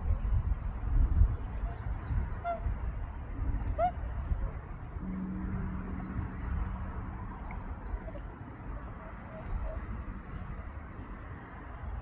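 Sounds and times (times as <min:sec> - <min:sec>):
low background rumble: 0:00.0 - 0:12.0
faint swan calls: 0:01.4 - 0:11.0
low temple bell hum: 0:04.9 - 0:08.1.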